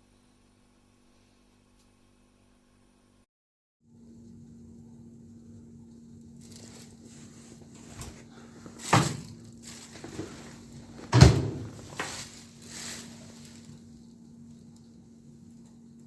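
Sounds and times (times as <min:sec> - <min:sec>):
knocks and rustling: 0:07.7 - 0:13.6
loud clunks: 0:11.0 - 0:12.1.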